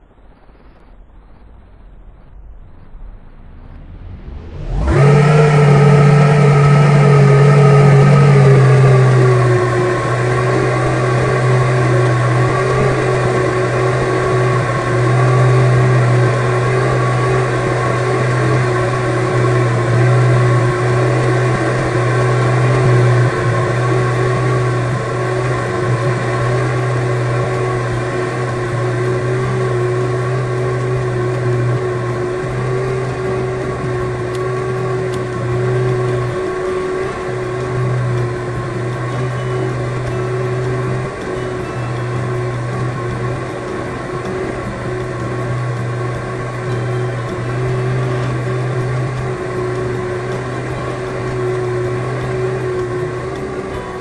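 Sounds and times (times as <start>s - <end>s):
high motor whine: 0.0s - 54.0s
electric fan motor humming: 2.5s - 54.0s.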